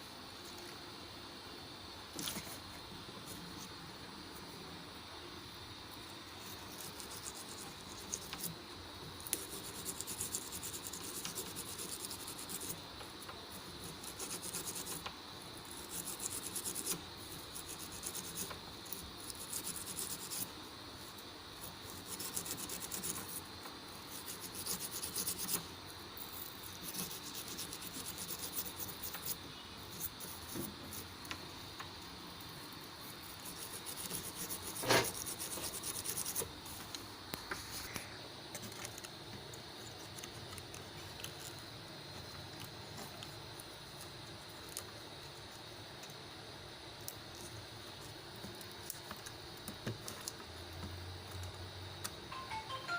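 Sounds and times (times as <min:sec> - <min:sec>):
scraping strokes: 0:33.6 - 0:36.4.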